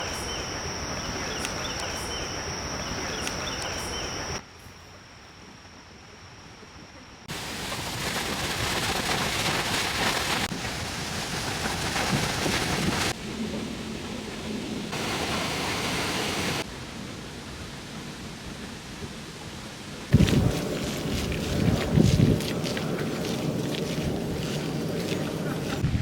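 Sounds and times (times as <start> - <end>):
outdoor rushing hiss: 7.2 - 13.2, 14.9 - 16.7.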